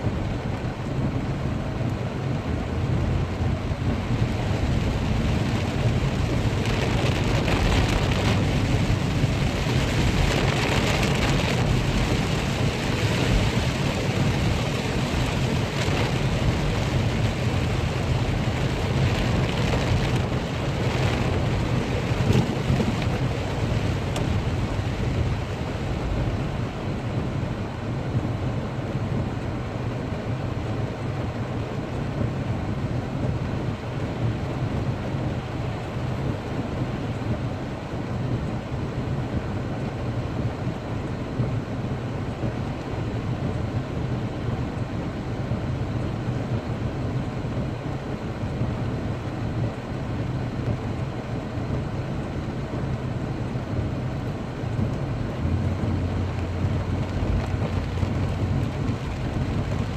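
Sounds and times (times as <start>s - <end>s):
heavy rain hissing: 3.2s - 27.2s.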